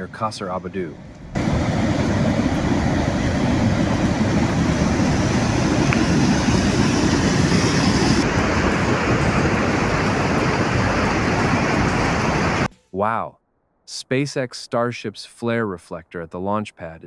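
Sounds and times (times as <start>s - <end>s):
floodwater rushing: 1.4s - 12.7s.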